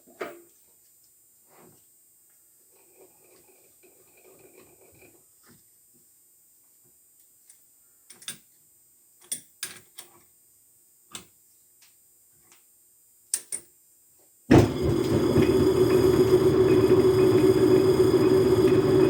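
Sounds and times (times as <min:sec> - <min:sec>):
lathe motor humming: 0:14.5 - 0:19.0.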